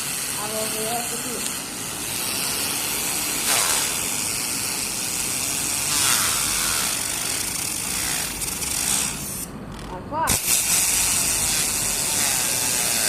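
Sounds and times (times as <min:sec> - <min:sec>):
compressed air blowing: 0:00.0 - 0:07.0.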